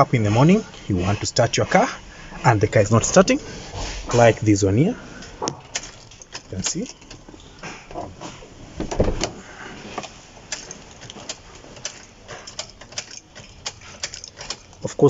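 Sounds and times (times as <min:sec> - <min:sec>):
heavy knock in car cab: 0:08.8 - 0:09.4.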